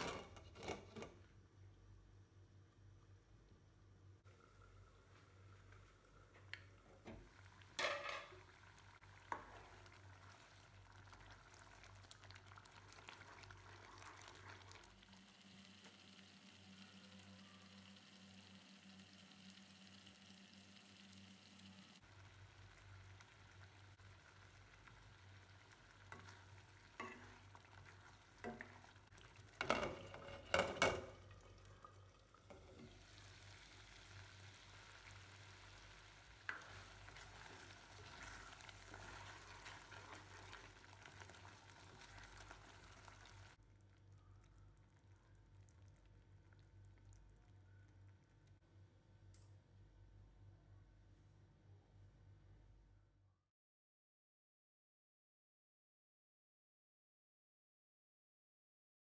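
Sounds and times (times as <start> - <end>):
food sizzling in a pan: 7.2 - 43.6.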